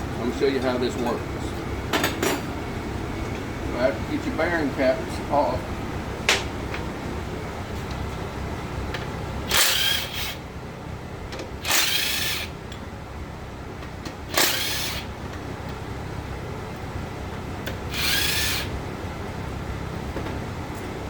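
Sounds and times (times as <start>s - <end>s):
power tool bursts: 9.5s - 10.4s, 11.6s - 12.5s, 14.3s - 15.1s, 17.7s - 18.8s.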